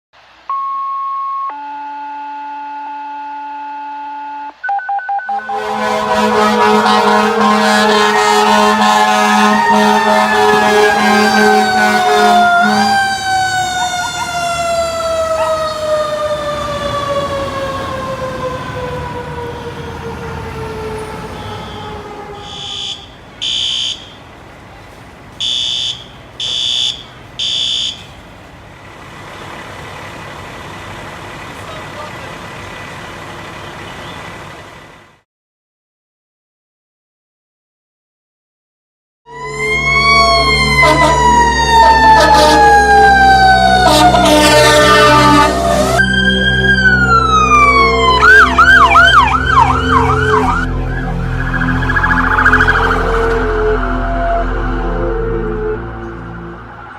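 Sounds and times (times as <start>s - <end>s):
fire truck siren winding down: 0.2s - 24.2s, 25.4s - 28.0s, 39.3s - 56.9s
beeps alternating two pitches: 0.5s - 5.5s
dispatch tones: 0.5s - 17.3s, 21.0s - 24.2s, 25.4s - 28.1s, 43.8s - 56.0s
loud low horn blast: 5.3s - 24.1s, 39.3s - 56.9s
truck engine rumble: 5.3s - 35.2s, 39.4s - 56.9s.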